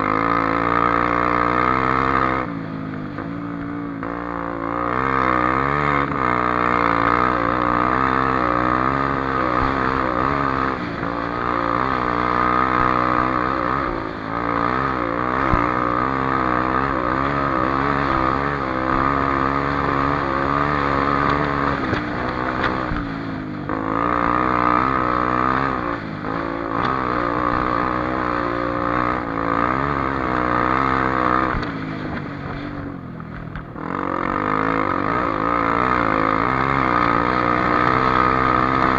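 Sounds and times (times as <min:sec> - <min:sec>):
dirt bike engine revving: 0:00.0 - 0:38.9.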